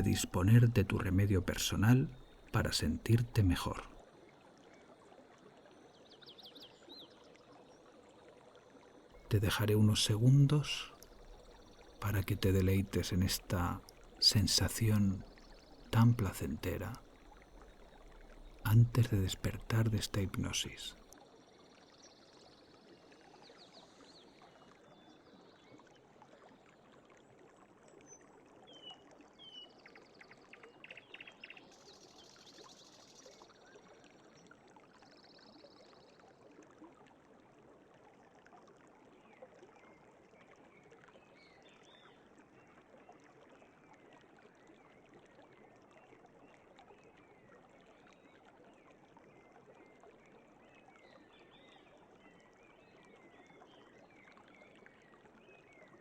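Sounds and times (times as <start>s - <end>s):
birds chirping: 0.0s - 4.0s, 9.3s - 21.0s
stream babbling: 0.0s - 4.0s, 9.2s - 21.0s.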